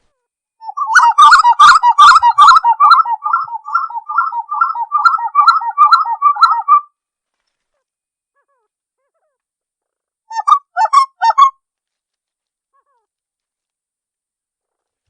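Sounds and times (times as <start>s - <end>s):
bird singing whistled notes: 0.6s - 6.9s.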